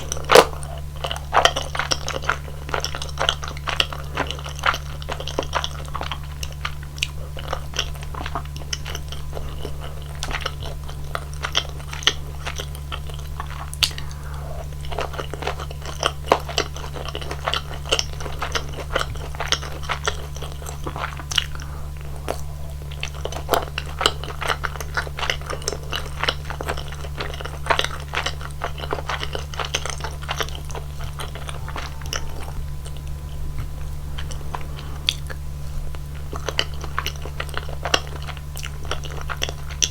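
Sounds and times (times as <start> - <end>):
chewing sticky food: 0.0 - 39.9
steady low hum: 0.0 - 39.9.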